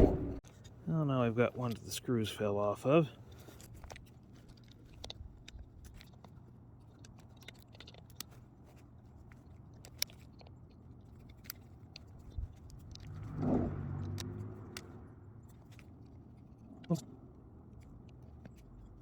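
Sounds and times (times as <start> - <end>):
low steady hum: 0.0 - 0.8.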